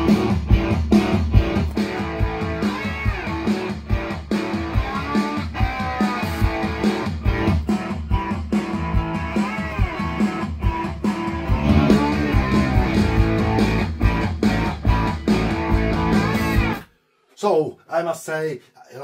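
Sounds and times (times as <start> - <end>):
guitar music over loudspeakers: 0.0 - 16.8
steady drum beat: 0.0 - 16.8.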